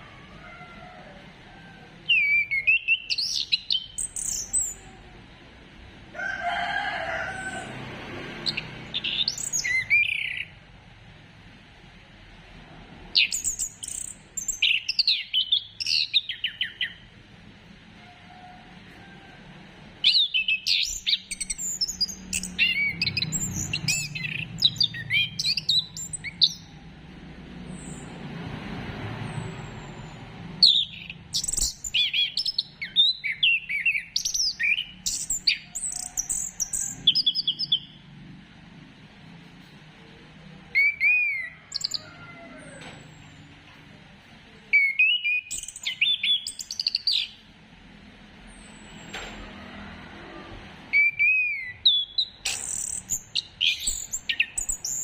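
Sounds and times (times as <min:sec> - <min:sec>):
thrush singing whistled phrases: 0:20.0 - 0:26.7, 0:40.7 - 0:42.0, 0:44.7 - 0:47.4, 0:50.9 - 0:55.0.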